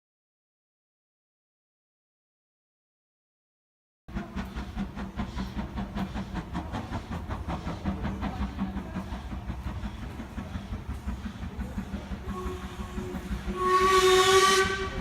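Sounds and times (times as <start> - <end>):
steam locomotive rumbling and beating: 4.1 - 15.0.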